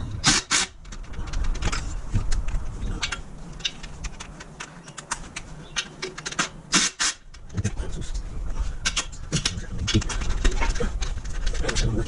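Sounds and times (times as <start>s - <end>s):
hand tools clicking on metal: 0.2s - 7.6s.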